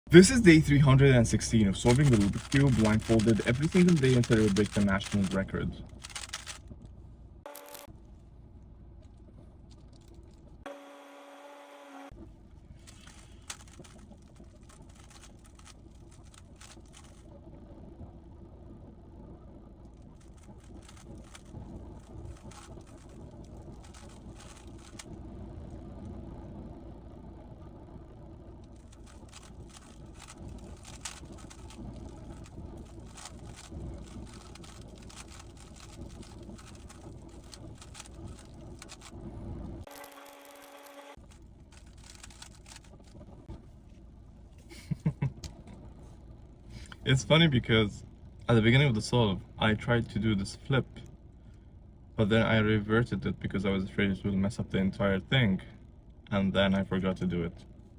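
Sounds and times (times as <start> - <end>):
steady low rumble: 0.1 - 10.7, 12.2 - 39.9, 41.1 - 57.9
steady low hum: 0.1 - 57.9
speed cube plastic clicking: 1.9 - 5.4, 6.0 - 6.6, 15.0 - 17.2, 20.4 - 21.5, 22.4 - 23.1, 23.9 - 25.1, 29.0 - 31.8, 32.4 - 39.1, 41.8 - 42.9.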